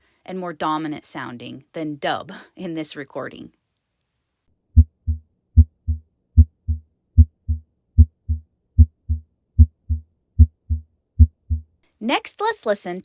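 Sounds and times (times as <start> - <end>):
heartbeat through stethoscope: 4.8 - 11.7.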